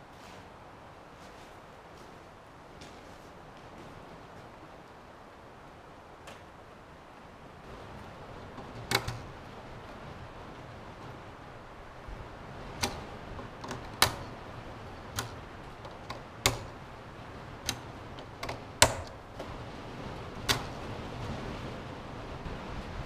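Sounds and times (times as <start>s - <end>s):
sharp clicks and knocks: 8.4s - 9.4s, 12.7s - 14.4s, 15.0s - 16.8s, 17.6s - 19.6s, 20.4s - 21.4s.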